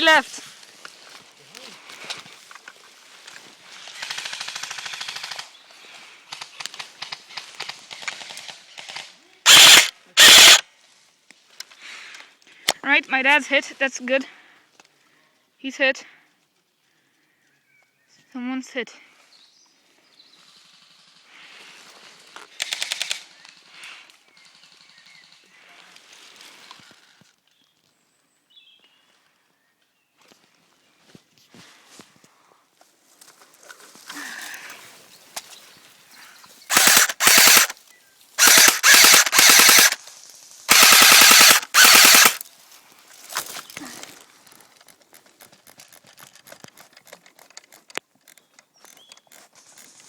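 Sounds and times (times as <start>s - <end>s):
airsoft gun automatic burst: 3.9s - 5.5s, 7.9s - 10.6s, 36.7s - 37.8s, 38.4s - 40.0s, 40.7s - 42.4s.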